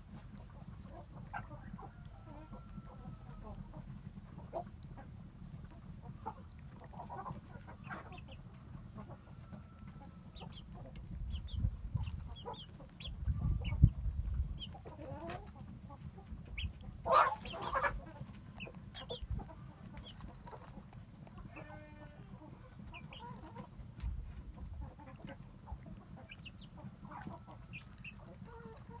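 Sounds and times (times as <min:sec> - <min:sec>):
chickens clucking: 0:00.0 - 0:29.0
chicken squawk: 0:16.6 - 0:20.7.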